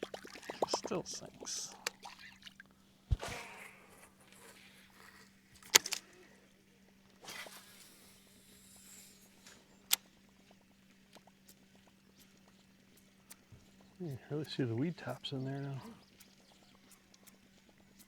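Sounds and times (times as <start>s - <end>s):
fishing tackle clicks and knocks: 0.0s - 2.5s, 5.6s - 6.2s
steady low hum: 0.0s - 18.0s.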